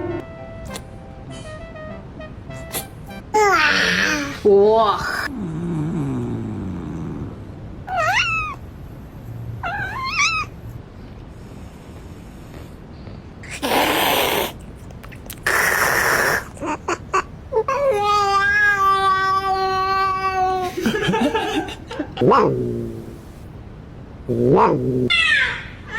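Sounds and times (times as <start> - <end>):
cat meowing: 7.9 - 8.6, 9.6 - 10.5
cat yowling: 7.9 - 8.6, 9.6 - 10.5.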